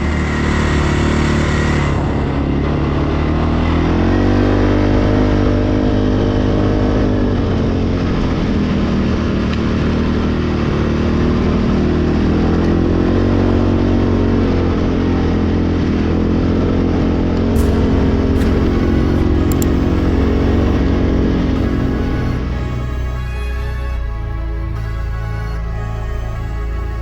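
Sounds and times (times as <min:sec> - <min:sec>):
quad bike engine running: 0:00.0 - 0:24.3.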